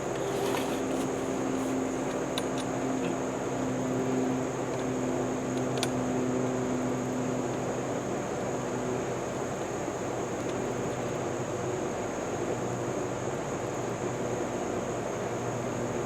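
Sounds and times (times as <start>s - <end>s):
lawn mower engine running: 0.0s - 5.0s.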